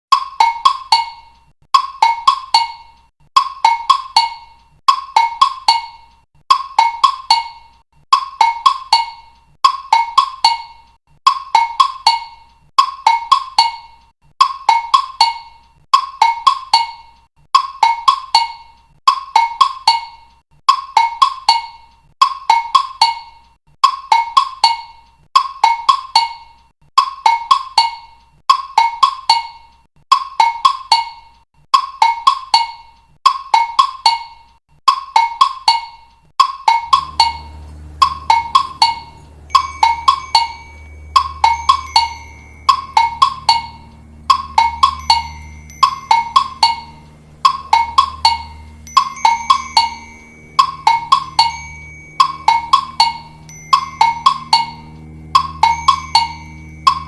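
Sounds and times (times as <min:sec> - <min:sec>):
ringtone percussive notes: 0:00.1 - 0:21.8, 0:22.4 - 0:57.0
low bass and held notes: 0:36.9 - 0:57.0.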